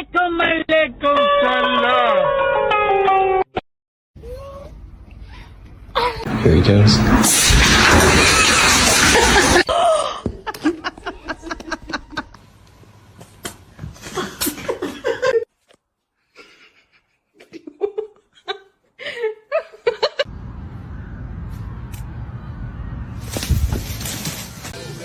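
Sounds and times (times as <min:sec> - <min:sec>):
people laughing: 0:08.9 - 0:12.4, 0:14.0 - 0:15.4.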